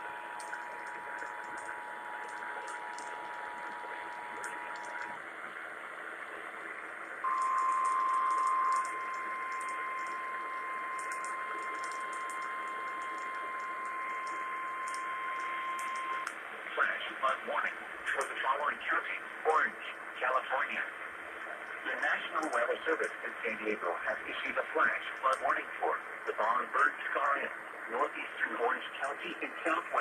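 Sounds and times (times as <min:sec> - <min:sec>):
hiss with crackling static: 0:00.0 - 0:30.0
two-tone attention signal: 0:07.2 - 0:16.3.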